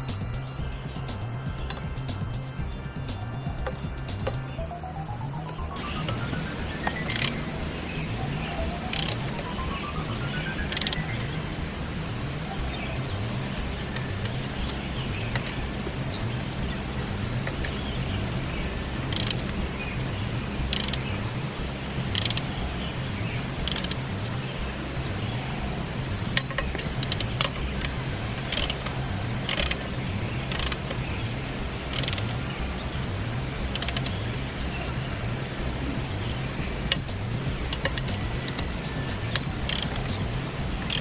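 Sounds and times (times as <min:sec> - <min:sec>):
low hum: 0:00.0 - 0:41.0
mechanical clicks and ratcheting: 0:06.8 - 0:08.1, 0:08.8 - 0:09.5, 0:10.4 - 0:12.0, 0:19.1 - 0:19.4, 0:20.7 - 0:21.0, 0:22.1 - 0:22.5, 0:23.6 - 0:24.0, 0:26.4 - 0:27.6, 0:28.5 - 0:28.9, 0:29.5 - 0:29.8, 0:30.5 - 0:31.0, 0:31.9 - 0:32.3, 0:33.7 - 0:34.2, 0:36.6 - 0:41.0.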